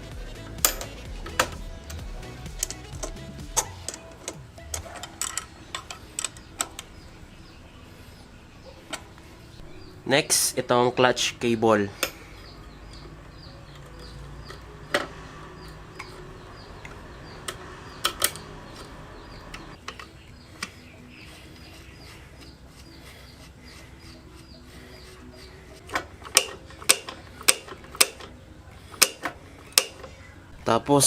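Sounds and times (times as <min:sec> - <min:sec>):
clicks and knocks of tools: 0:02.6 - 0:06.9, 0:25.8 - 0:30.2.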